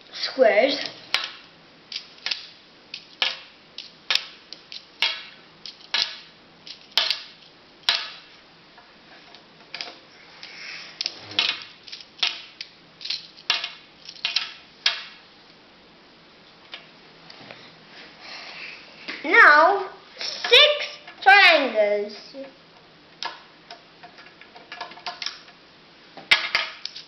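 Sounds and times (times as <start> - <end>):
plastic tiles clicking together: 1.1 - 8.2.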